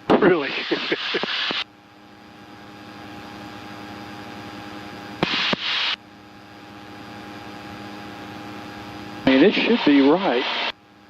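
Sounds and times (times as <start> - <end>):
intercom hiss: 0.3 - 1.6, 5.2 - 6.0, 9.3 - 10.8
propeller aircraft engine droning: 2.4 - 11.0.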